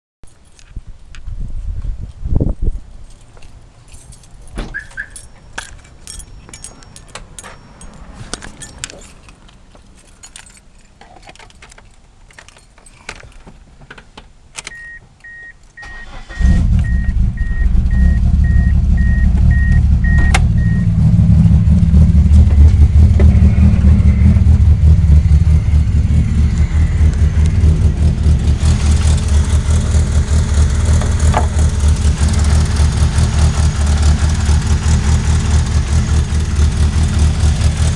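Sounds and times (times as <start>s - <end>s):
keys jingling: 3.0s - 13.4s
vehicle warning chime beeping: 4.8s - 9.0s, 14.7s - 21.0s, 23.3s - 32.0s
engine starting and running: 15.8s - 37.9s.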